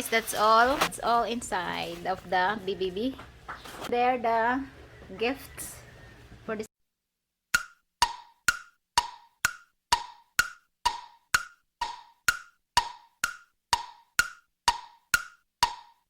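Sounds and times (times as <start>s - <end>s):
wood-block tick-tock: 7.5s - 16.0s.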